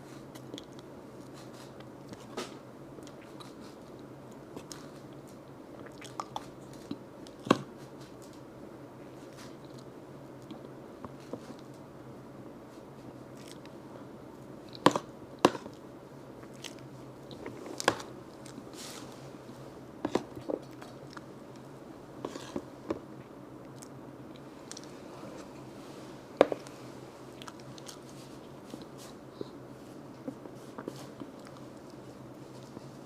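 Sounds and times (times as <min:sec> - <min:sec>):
person chewing: 0:04.6 - 0:07.4, 0:13.3 - 0:13.7, 0:16.4 - 0:19.1, 0:26.6 - 0:29.6, 0:30.6 - 0:32.8.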